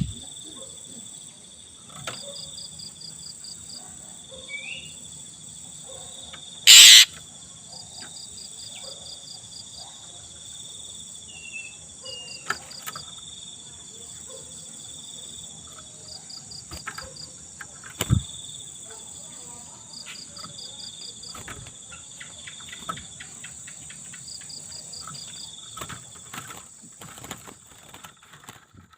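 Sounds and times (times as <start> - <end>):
crickets trilling: 0.0 - 28.9
pulsed insect chirp: 6.6 - 7.2.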